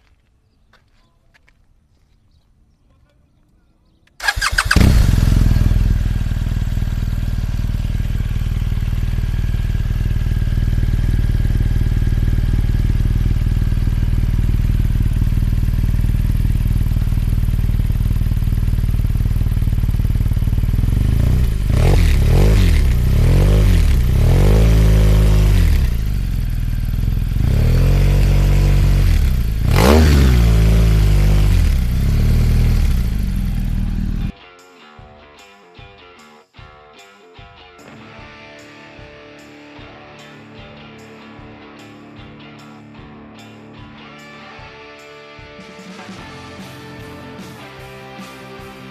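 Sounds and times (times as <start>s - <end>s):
motorcycle engine idling and revving: 4.2s - 34.3s.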